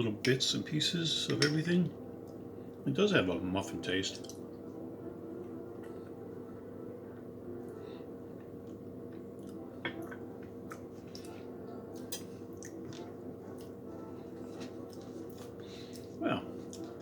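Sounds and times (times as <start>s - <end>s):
person chewing: 7.1s - 13.8s.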